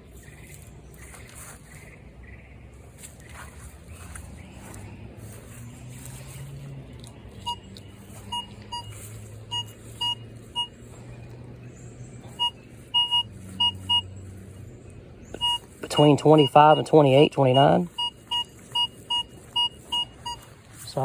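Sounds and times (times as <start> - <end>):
metal detector short beeps: 7.4 - 10.8, 12.3 - 14.1, 15.4 - 21.0.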